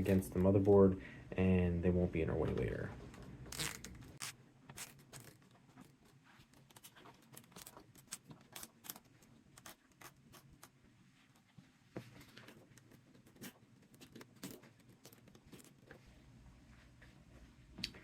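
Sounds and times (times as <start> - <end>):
cables clicking and scraping: 12.1 - 16.1.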